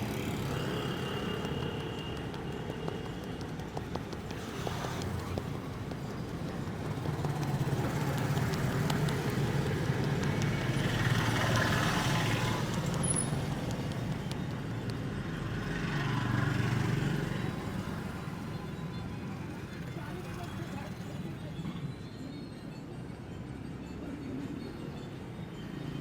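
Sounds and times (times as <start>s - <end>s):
vehicle engine hum: 0.0s - 21.4s.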